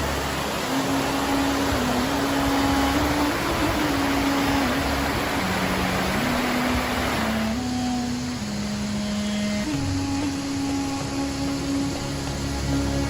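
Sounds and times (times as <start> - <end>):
loud rushing noise: 0.0 - 8.2
low melodic tone: 0.0 - 13.0.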